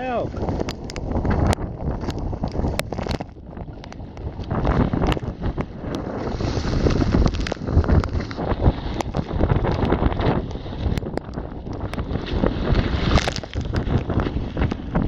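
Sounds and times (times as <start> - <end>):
gusty wind buffeting microphone: 0.0 - 15.0
water splashes and knocks: 0.4 - 15.0.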